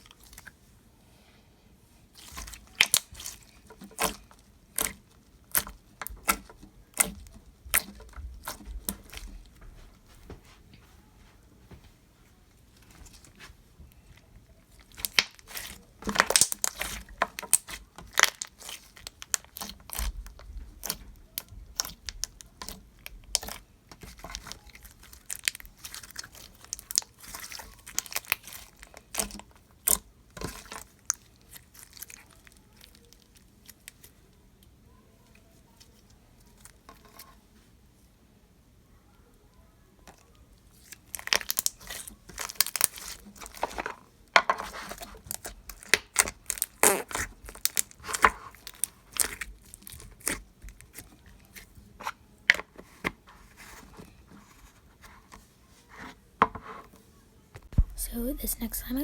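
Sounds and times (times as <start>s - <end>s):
slime clicking and popping: 14.9s - 23.6s.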